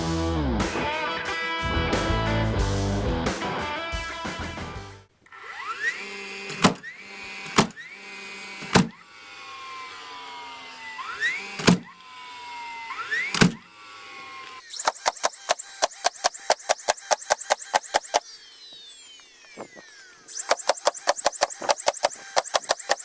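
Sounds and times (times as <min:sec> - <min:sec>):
nail gun shots: 0:06.5 - 0:06.9, 0:07.5 - 0:07.8, 0:08.6 - 0:09.0, 0:11.6 - 0:11.9, 0:13.3 - 0:13.6, 0:14.7 - 0:18.2, 0:20.4 - 0:23.0.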